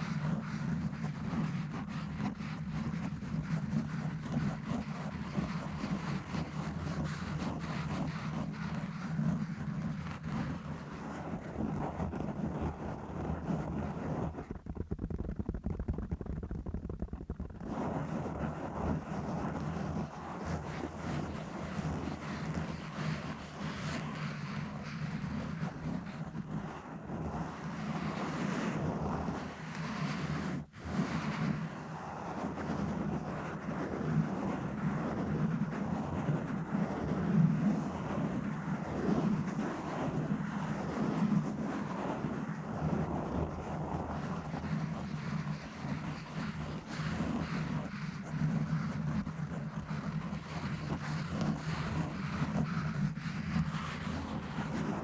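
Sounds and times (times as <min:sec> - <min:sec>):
scratching on microphone: 0:00.0 - 0:55.0
microphone being scratched: 0:13.6 - 0:18.5.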